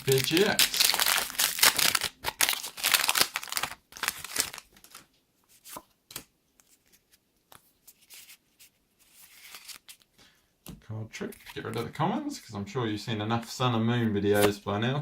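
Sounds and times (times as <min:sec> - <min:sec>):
foil wrapper crinkling and tearing: 0:00.0 - 0:05.1.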